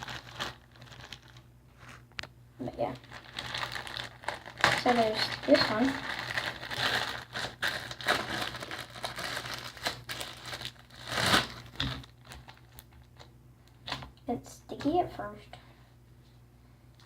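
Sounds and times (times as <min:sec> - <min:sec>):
plastic bag crinkling: 0:00.0 - 0:02.2, 0:02.8 - 0:13.3.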